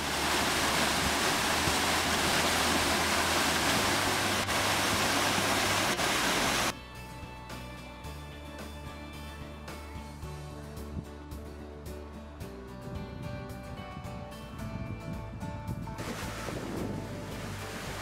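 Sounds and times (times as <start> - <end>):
water pouring from a pipe: 0.0 - 6.8, 16.0 - 18.0
background music: 1.6 - 18.0.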